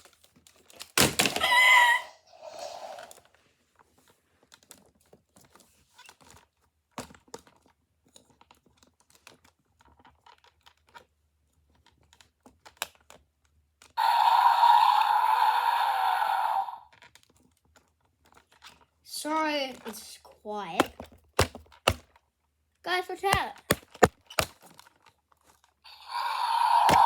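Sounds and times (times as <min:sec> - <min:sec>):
plastic toys clicking and tapping: 0:20.6 - 0:22.1, 0:23.2 - 0:24.8.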